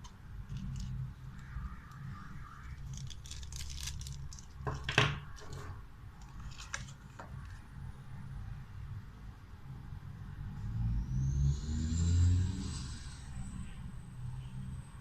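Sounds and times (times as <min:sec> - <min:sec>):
plastic packaging clicks and rustles: 0:00.5 - 0:02.0, 0:02.7 - 0:07.6.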